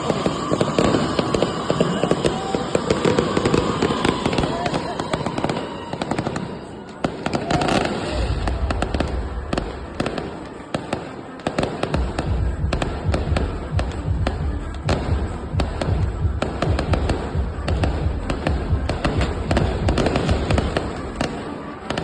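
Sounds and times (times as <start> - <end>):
fireworks bangs and crackling: 0.0 - 22.0.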